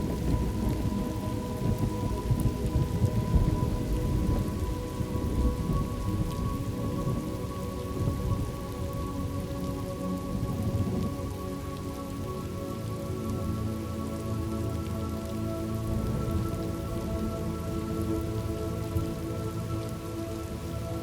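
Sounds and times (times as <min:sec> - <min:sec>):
thunder rumbling: 0:00.0 - 0:09.4, 0:15.7 - 0:19.2
faint sustained tones: 0:00.0 - 0:21.0
steady rain: 0:00.0 - 0:21.0.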